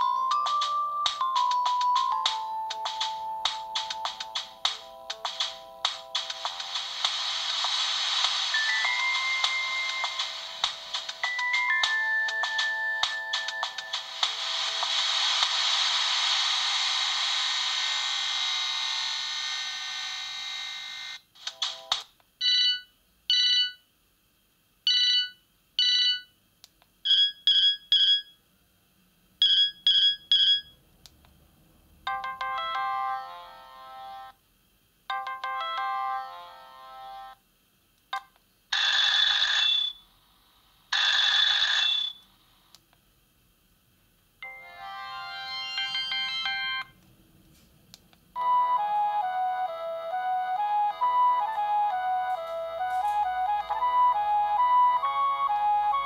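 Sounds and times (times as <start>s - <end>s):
polyphonic ringtone melody: 0.0s - 6.8s, 8.5s - 14.3s, 32.1s - 34.3s, 35.1s - 37.3s, 44.4s - 47.0s, 48.4s - 56.0s.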